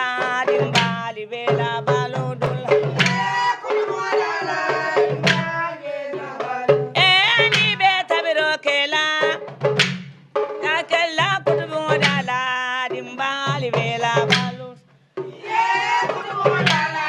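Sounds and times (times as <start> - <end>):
sharp drum strokes: 0.0 - 8.2, 13.4 - 17.0
wavering melody over drums: 0.0 - 17.0.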